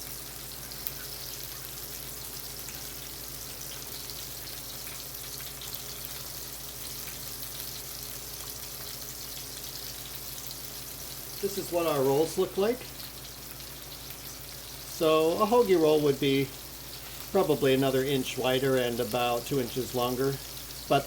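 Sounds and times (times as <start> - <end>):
meatballs sizzling in oil: 0.0 - 21.0.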